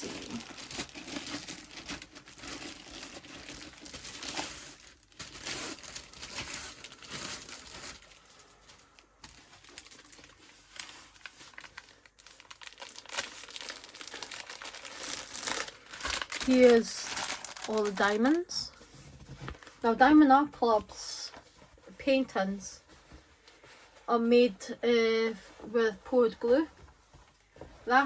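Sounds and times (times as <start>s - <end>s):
packaging crinkling and rustling: 0.0s - 20.1s.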